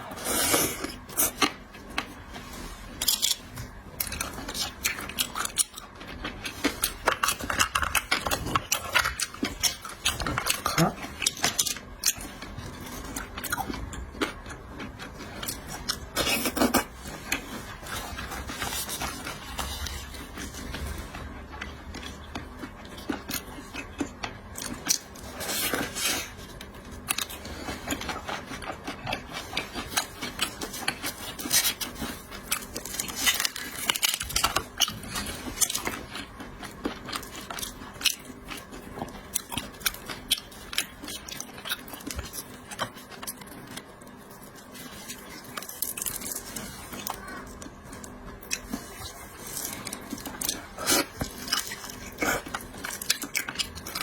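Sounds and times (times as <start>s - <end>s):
chewing and crunching seafood: 0.0s - 54.0s.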